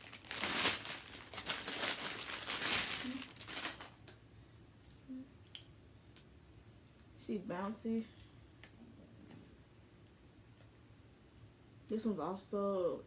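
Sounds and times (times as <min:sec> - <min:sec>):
plastic wrapping crinkling: 0:00.0 - 0:04.2.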